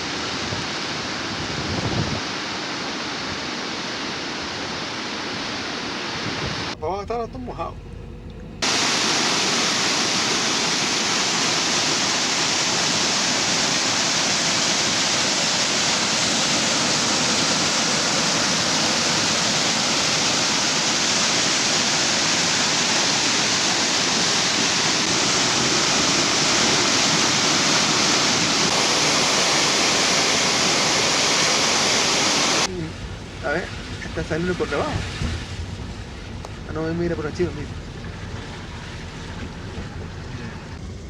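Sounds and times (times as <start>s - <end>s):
torrent of water rushing: 0.0s - 7.7s, 8.6s - 40.9s.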